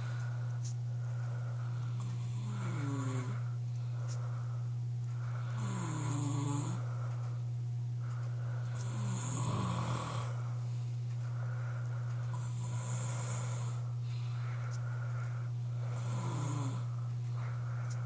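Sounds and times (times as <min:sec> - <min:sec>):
steady low hum: 0:00.0 - 0:18.0
man snoring: 0:01.9 - 0:03.5, 0:05.3 - 0:06.9, 0:08.7 - 0:10.5, 0:12.3 - 0:14.0, 0:15.7 - 0:17.0.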